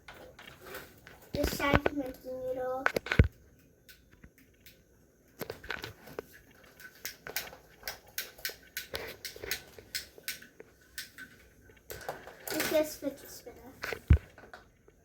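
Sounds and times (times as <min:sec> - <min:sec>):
plastic fidget toys clicking: 0:06.6 - 0:11.3.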